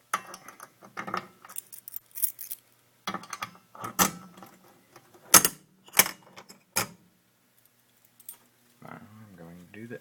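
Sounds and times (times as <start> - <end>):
keys jangling: 1.5 - 2.6.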